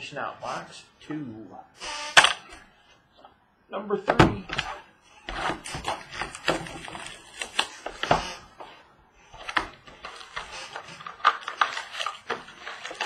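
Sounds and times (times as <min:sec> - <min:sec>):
cardboard and foil wrapper clicks: 0:05.7 - 0:07.8, 0:09.4 - 0:13.0.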